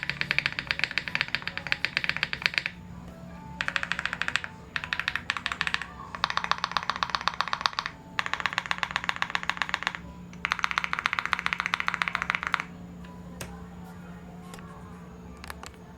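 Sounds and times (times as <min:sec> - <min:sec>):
fast typing on mechanical keyboard: 0:00.0 - 0:02.8, 0:03.6 - 0:12.7.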